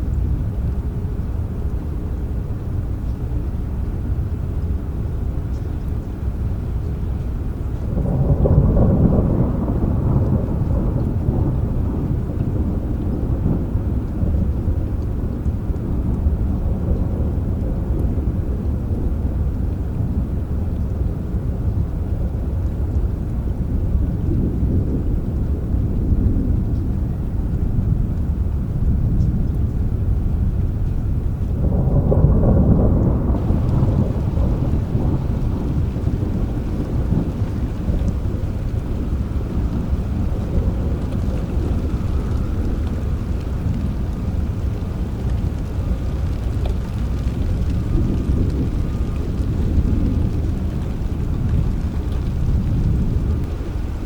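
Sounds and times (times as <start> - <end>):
steady rain: 0.0 - 54.0
thunder rumbling: 3.6 - 54.0.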